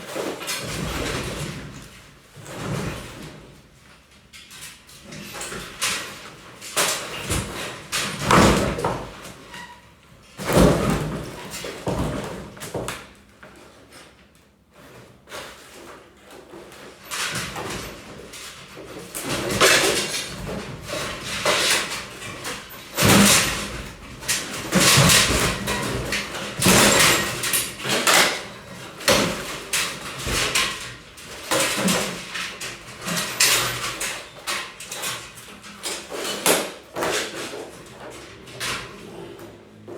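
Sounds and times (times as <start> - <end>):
wall bangs and knocks: 19.2 - 33.6
falling pieces crashing: 19.2 - 35.3.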